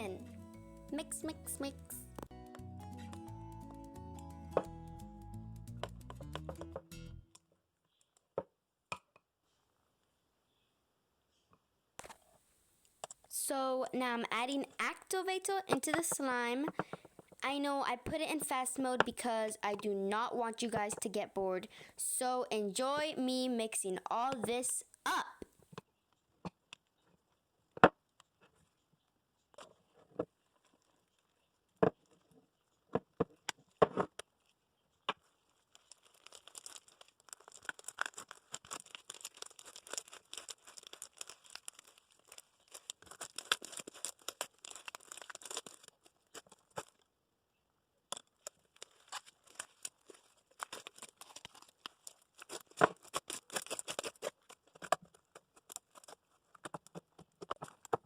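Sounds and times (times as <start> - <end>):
slime crackling and popping: 35.6 - 47.0, 48.2 - 55.0.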